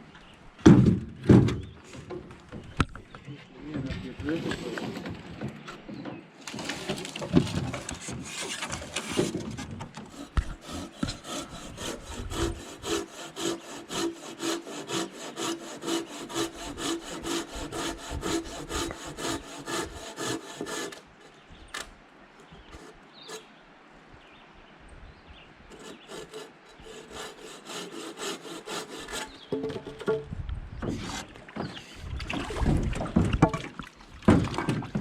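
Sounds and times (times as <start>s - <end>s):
hand saw cutting wood: 6.5s - 21.0s, 25.7s - 29.6s.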